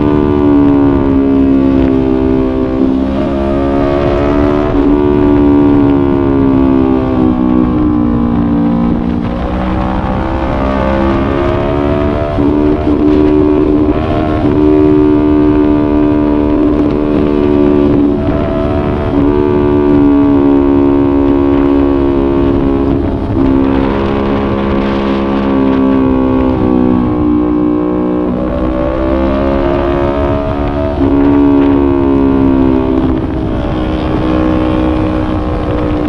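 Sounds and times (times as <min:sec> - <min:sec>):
motorcycle engine under way: 0:00.0 - 0:36.0
wind rushing: 0:00.0 - 0:36.0.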